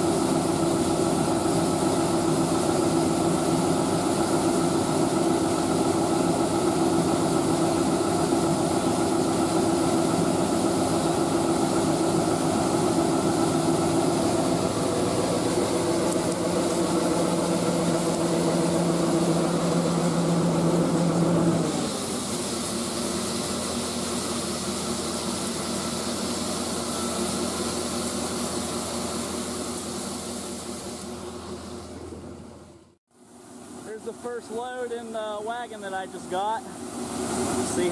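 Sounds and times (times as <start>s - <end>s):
diesel engine running: 0.0s - 37.9s.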